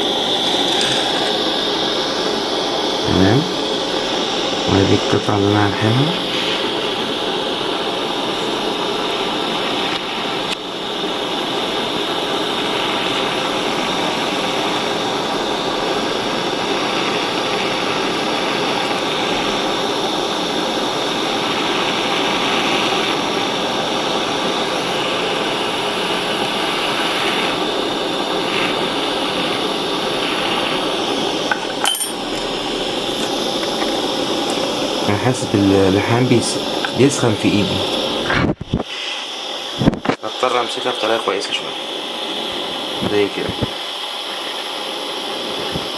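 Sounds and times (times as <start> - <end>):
torch flame hissing: 0.0 - 45.9
metal clink: 31.5 - 32.4.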